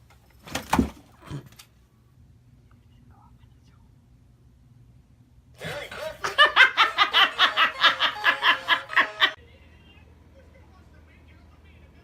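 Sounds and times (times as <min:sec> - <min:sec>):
person laughing hard: 0:05.6 - 0:09.4.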